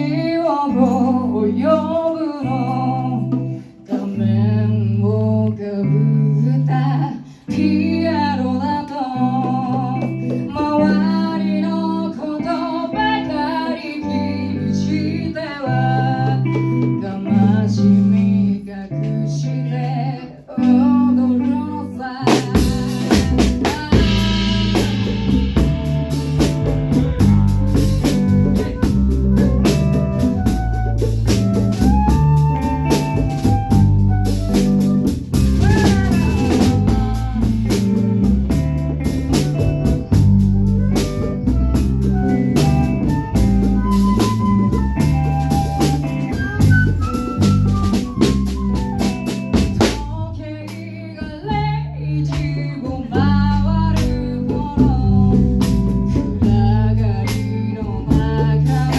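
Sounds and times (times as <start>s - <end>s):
bass line: 20.6s - 58.9s
drum kit with snare hits: 22.3s - 58.9s
melodic lead line: 22.6s - 49.8s.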